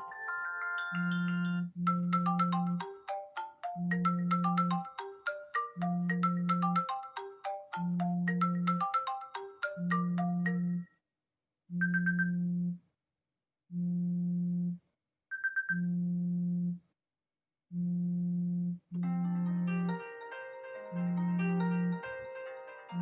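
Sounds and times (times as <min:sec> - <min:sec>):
phone ringtone: 0:00.0 - 0:10.8, 0:19.0 - 0:23.0.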